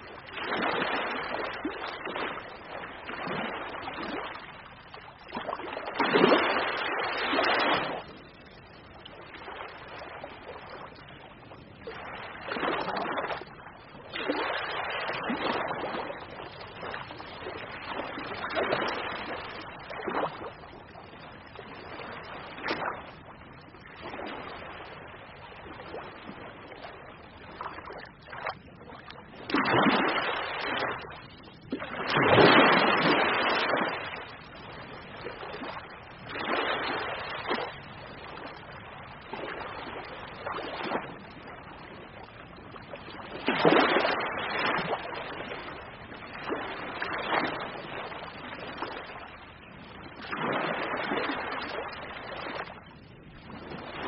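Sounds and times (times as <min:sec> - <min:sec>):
ocean waves breaking: 0:14.2 - 0:20.5, 0:29.5 - 0:31.2, 0:31.8 - 0:41.3.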